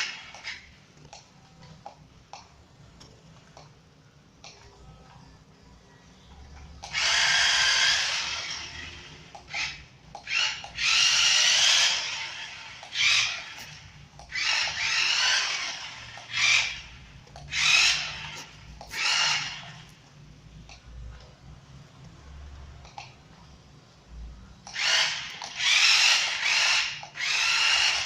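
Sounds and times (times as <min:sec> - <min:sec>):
toy car motor whirring: 0:00.0 - 0:01.8, 0:06.8 - 0:20.0, 0:24.6 - 0:28.0.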